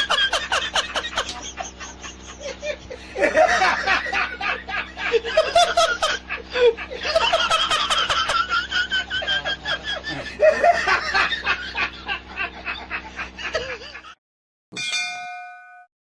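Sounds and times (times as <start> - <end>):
laughter in rapid bursts: 0.0 - 14.2.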